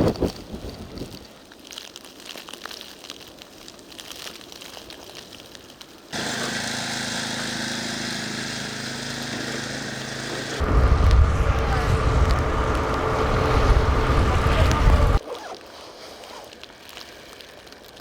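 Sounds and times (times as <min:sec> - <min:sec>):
small engine running: 0:06.2 - 0:15.2.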